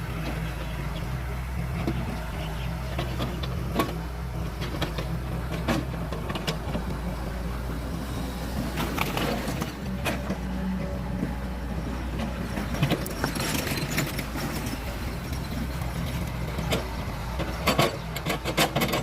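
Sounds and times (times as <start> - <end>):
heavy engine humming: 0.0 - 19.0
sharp knocks and clanks: 16.6 - 19.0.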